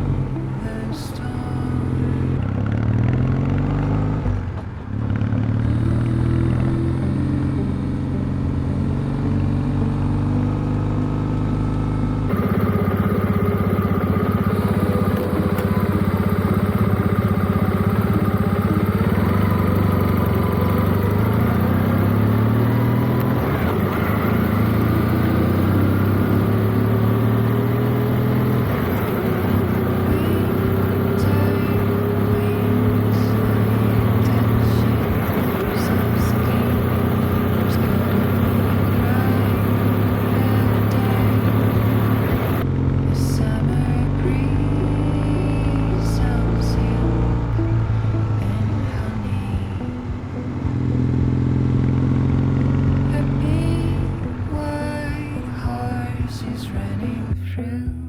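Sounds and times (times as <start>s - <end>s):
motorcycle engine running: 0.0s - 58.0s.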